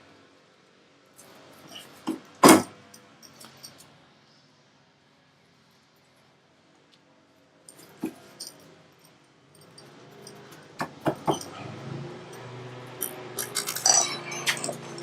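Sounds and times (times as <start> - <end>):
metal parts and tools clinking: 1.2 - 3.9, 7.7 - 15.0.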